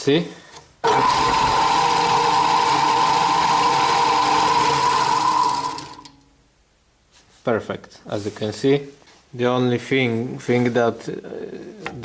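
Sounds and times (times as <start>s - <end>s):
wood lathe whining: 0.8s - 6.2s.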